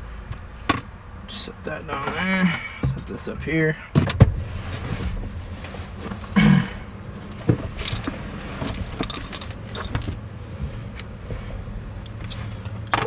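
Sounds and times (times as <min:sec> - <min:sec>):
light metallic clinks: 0:07.2 - 0:10.1
tools being set down: 0:07.3 - 0:10.2.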